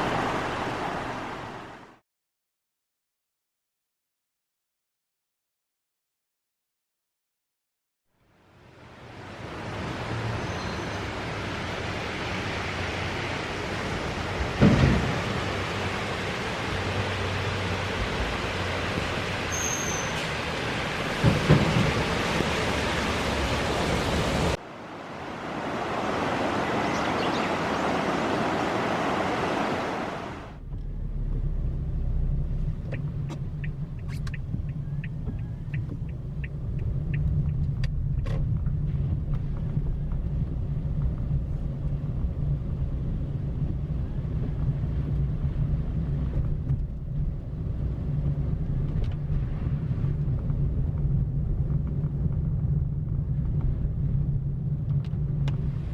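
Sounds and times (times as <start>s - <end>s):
car driving rumble from inside: 30.6s - 55.9s.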